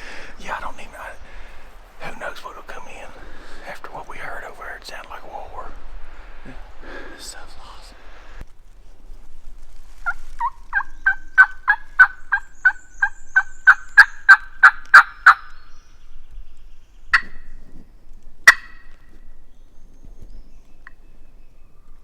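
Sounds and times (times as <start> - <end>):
turkey yelping: 10.0 - 15.5.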